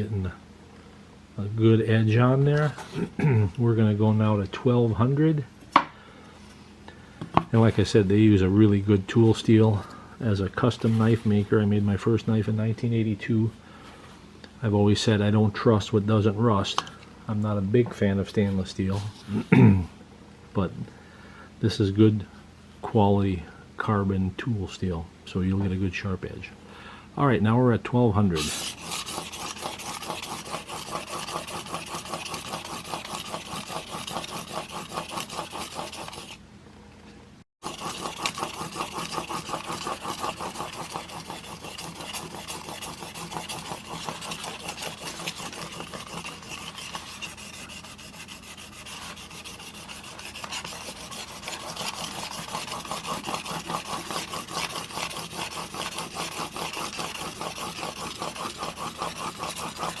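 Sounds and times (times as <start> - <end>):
blade scraping on sharpening plate: 28.4 - 36.4, 37.6 - 60.0.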